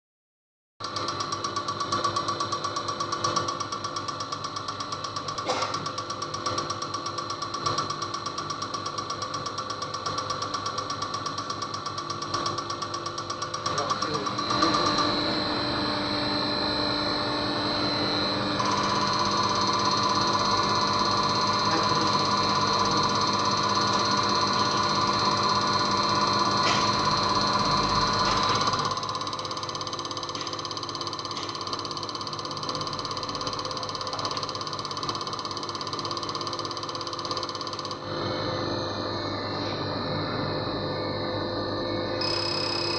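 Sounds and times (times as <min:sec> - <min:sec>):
machine whining: 0:09.0 - 0:42.9
ratchet-like mechanical ticking: 0:28.7 - 0:38.0.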